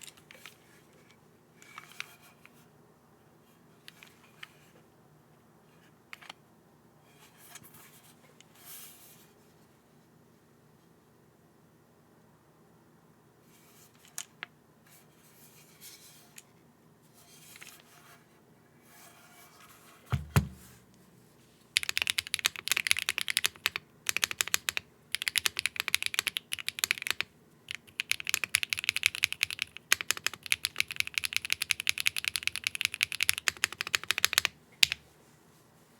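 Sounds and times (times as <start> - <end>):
low thump: 20.1 - 20.7
mechanical keyboard typing: 21.8 - 35.0.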